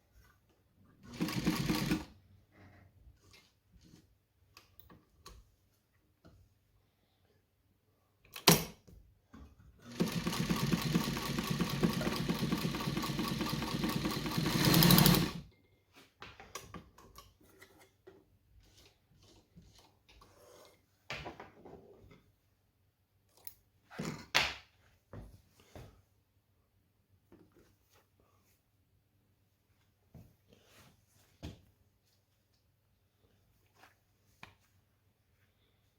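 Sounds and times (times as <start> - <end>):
sewing machine running: 1.0 - 2.1, 9.8 - 15.4.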